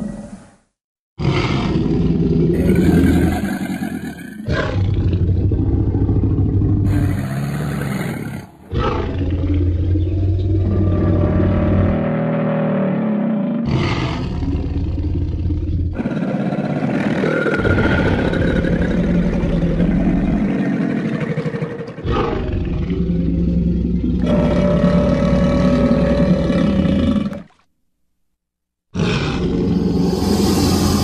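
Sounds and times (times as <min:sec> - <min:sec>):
deep monster roars: 0:01.2 - 0:27.5, 0:28.9 - 0:31.0
heavy low rumble: 0:29.5 - 0:31.0.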